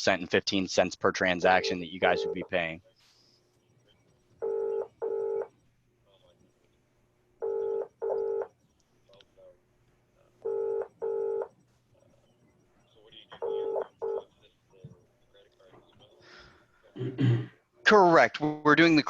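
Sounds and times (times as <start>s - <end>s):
telephone ringback tone: 1.5s - 2.5s, 4.4s - 5.5s, 7.4s - 8.5s, 10.4s - 11.5s, 13.4s - 14.2s.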